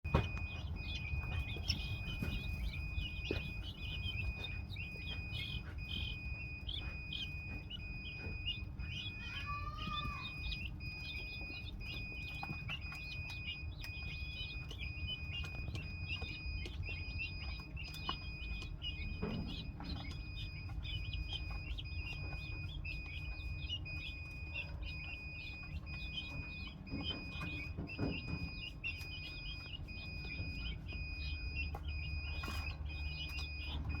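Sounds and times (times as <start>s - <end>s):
steady high tone: 0.1s - 18.4s
guinea fowl calling: 0.1s - 30.8s.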